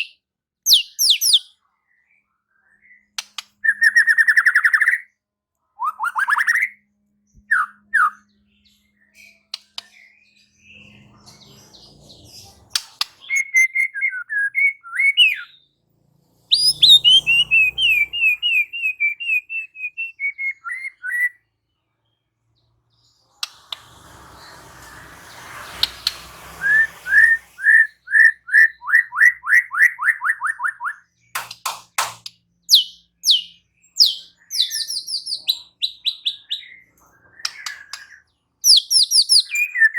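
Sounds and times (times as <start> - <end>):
bird singing whistled phrases: 0.0 - 1.5, 5.8 - 6.8, 16.5 - 21.4, 25.3 - 31.0, 32.7 - 39.9.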